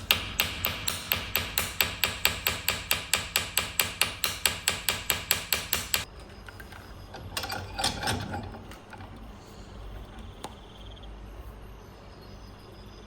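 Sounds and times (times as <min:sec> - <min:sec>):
hammer strikes: 0:00.0 - 0:06.1
metal parts clattering: 0:06.1 - 0:10.2.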